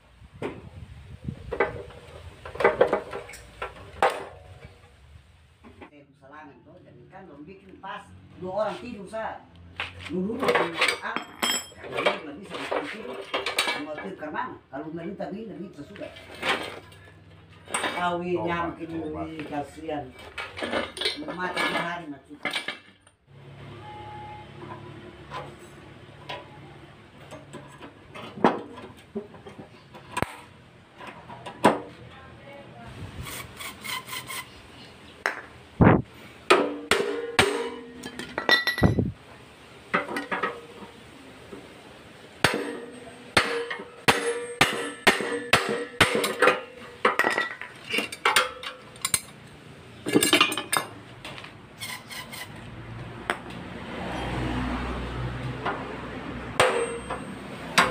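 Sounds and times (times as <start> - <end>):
hand tools knocking on metal: 36.5 - 39.1, 42.4 - 49.4, 55.5 - 57.9.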